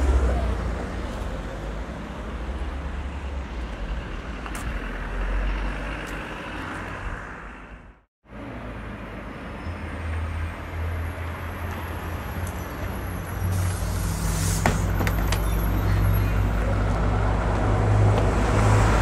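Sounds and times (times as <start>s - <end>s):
road noise: 0.0s - 19.0s.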